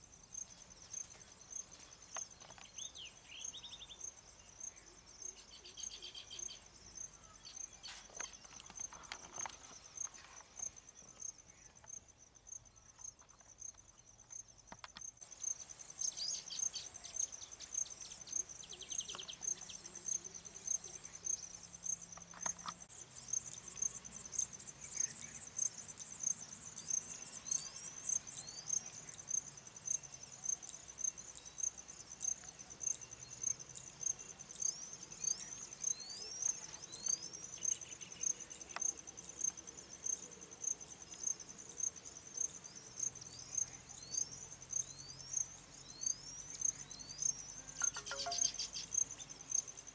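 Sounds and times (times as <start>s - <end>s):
cricket chirping: 0.0s - 49.9s
bird chirps and calls: 47.8s - 49.0s.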